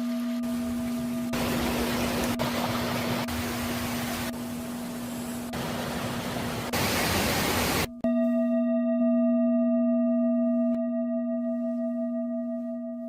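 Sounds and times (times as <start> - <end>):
bell-like ringing tone: 8.0 - 13.0.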